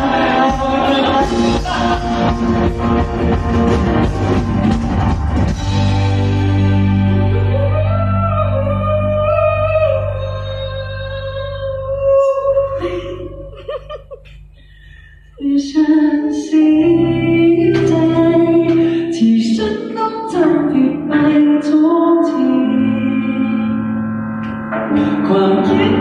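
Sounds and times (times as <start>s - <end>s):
instrumental accompaniment: 0.0s - 7.8s
woman singing: 7.3s - 13.5s, 15.4s - 23.8s.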